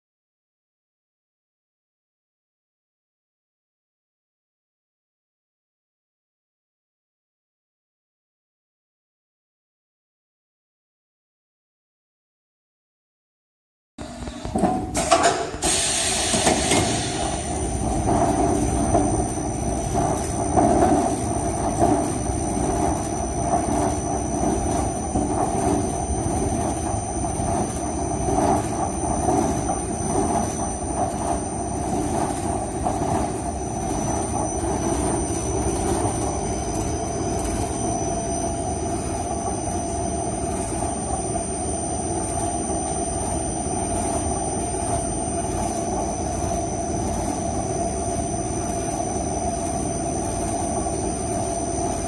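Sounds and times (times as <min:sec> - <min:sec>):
machine running with high whine: 0:14.0 - 0:52.0.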